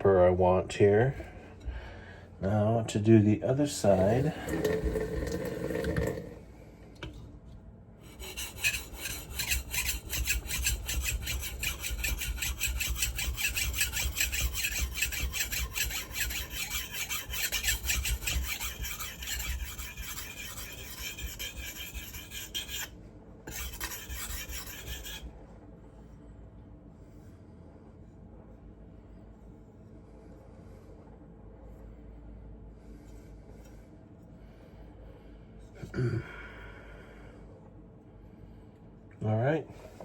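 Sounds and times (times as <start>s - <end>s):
knife scraping on sharpening stone: 8.1s - 22.9s, 23.5s - 25.2s.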